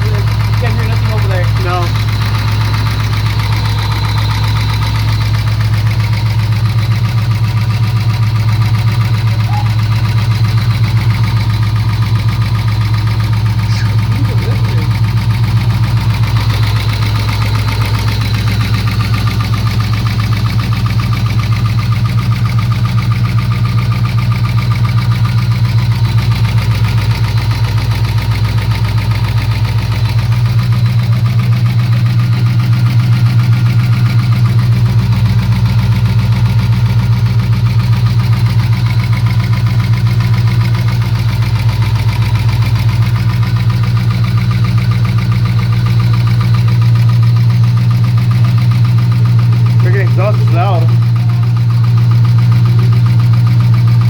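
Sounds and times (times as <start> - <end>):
car engine idling: 0.0 - 54.0
engine knock: 0.0 - 54.0.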